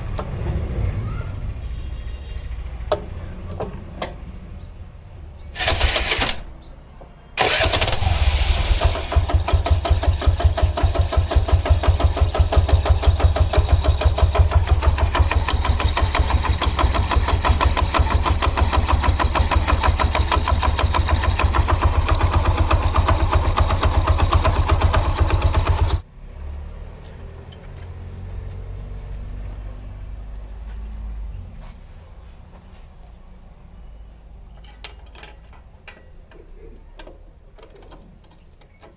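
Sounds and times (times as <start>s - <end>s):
scooter engine running: 7.4s - 26.0s.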